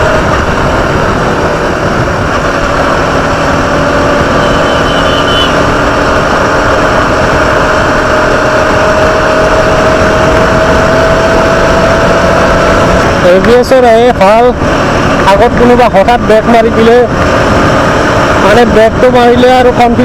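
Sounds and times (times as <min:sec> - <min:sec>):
air rushing past motorcycle: 0:00.0 - 0:13.4, 0:14.5 - 0:15.3, 0:17.1 - 0:18.5
motorcycle engine running: 0:00.0 - 0:20.0.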